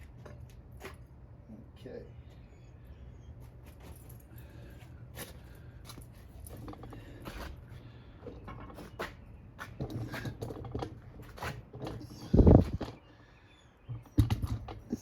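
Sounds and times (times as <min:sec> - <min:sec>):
knocks and scrapes on wheel rim: 0:08.4 - 0:13.0.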